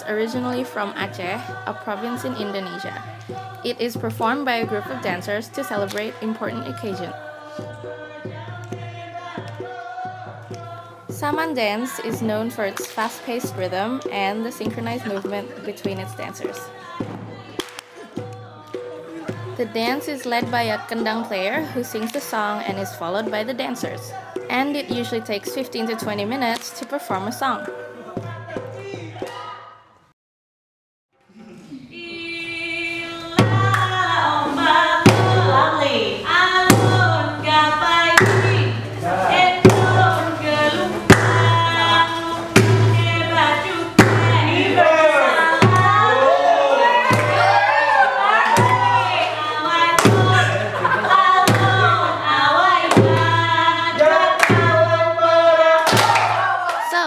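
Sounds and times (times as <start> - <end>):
deep beats: 0.0 - 29.5, 33.4 - 57.0
voices chanting held notes: 0.0 - 29.8, 31.3 - 57.0
sung melody: 33.0 - 56.5
heavy beat with low tone: 48.5 - 55.3.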